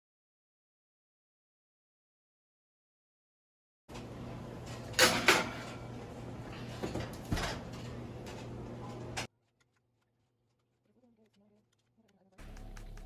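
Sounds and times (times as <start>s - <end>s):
objects set down in kitchen: 4.7s - 5.8s, 6.6s - 8.6s.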